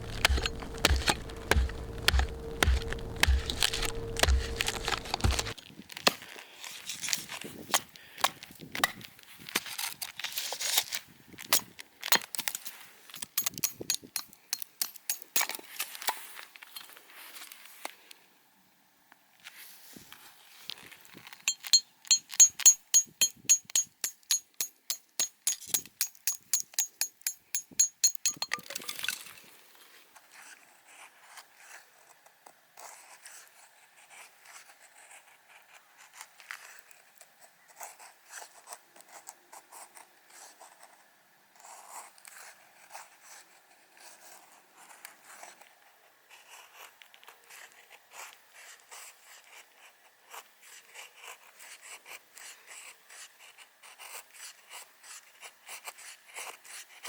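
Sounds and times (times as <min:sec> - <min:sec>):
hand saw cutting wood: 0:00.0 - 0:05.6
knife shaving wood: 0:00.0 - 0:05.6.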